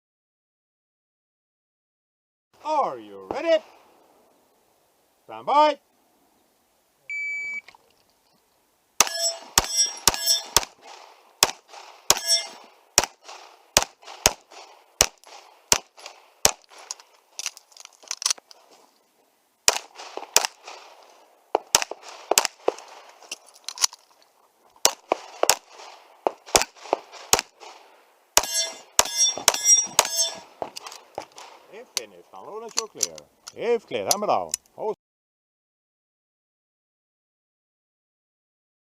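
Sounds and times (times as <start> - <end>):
bullets clanging on steel targets: 9.0 - 10.7, 12.1 - 12.7, 28.4 - 30.5
handgun shots: 9.0 - 17.0, 19.7 - 20.9, 28.4 - 31.6.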